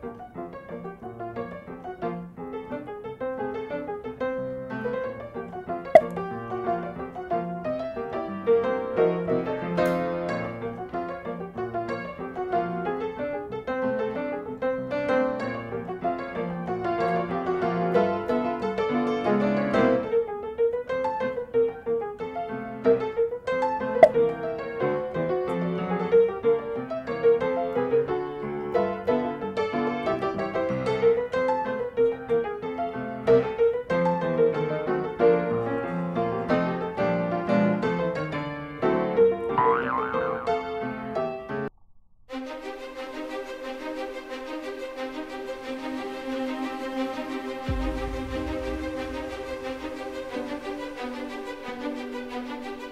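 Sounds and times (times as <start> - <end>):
piano music: 22.4 - 41.6, 43.8 - 52.9.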